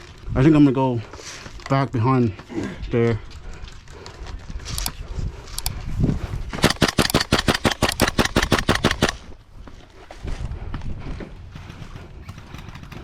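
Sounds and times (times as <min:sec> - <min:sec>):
airsoft rifle shots: 0:06.6 - 0:09.2.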